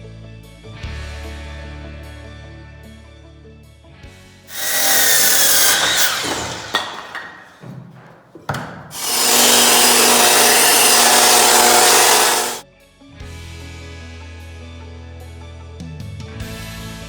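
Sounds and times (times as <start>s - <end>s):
power saw cutting wood: 4.5s - 12.6s.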